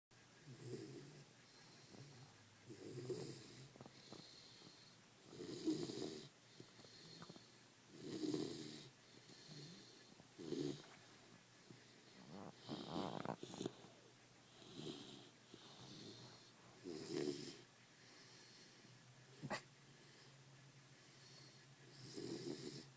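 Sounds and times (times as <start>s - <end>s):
pet snoring loudly: 0.4s - 4.6s, 5.2s - 6.3s, 6.9s - 11.0s, 12.2s - 13.9s, 14.5s - 17.6s, 21.2s - 22.9s.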